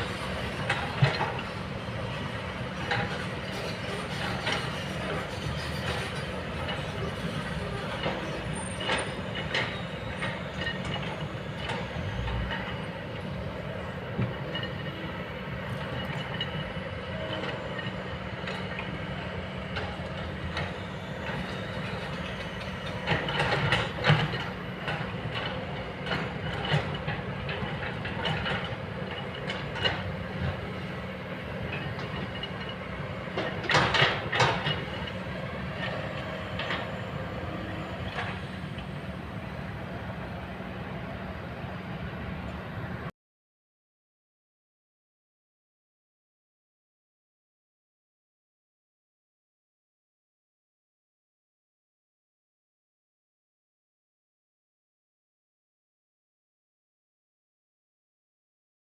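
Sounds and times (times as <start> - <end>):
excavator diesel engine running: 0.0 - 43.1.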